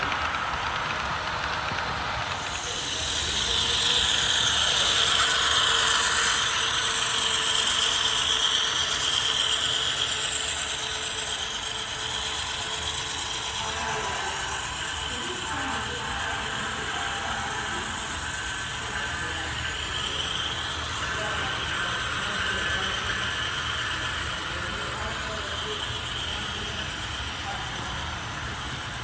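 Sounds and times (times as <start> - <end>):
model train rattling and whirring: 0.0 - 29.0.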